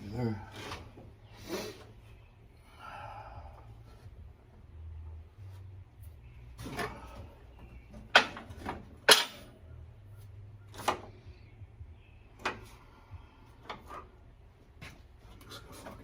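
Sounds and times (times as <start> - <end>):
hand tools knocking and clanking: 6.6 - 9.5.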